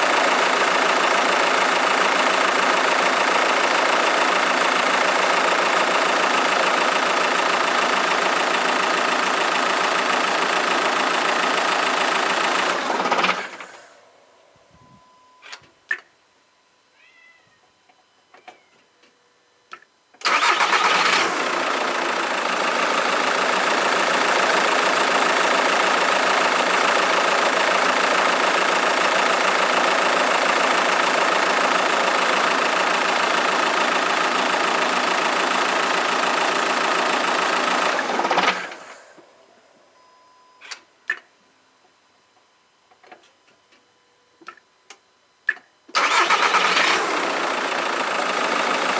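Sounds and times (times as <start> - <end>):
diesel engine running: 0.0 - 14.4, 20.2 - 39.4, 46.0 - 48.9.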